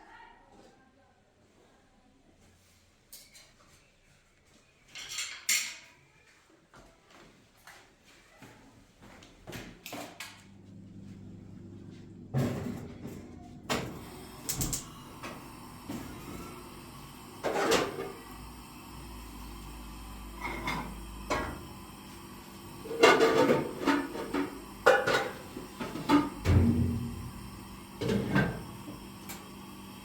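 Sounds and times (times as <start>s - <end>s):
steady low hum: 10.4s - 13.8s, 18.3s - 30.0s.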